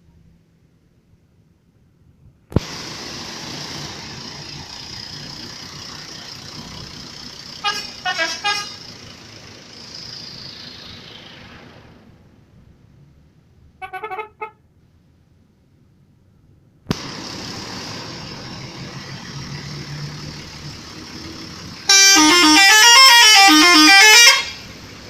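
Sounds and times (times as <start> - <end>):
steady rushing noise: 2.5 - 7.2
bus horn short toots: 7.6 - 8.8, 13.8 - 14.6, 21.9 - 24.6.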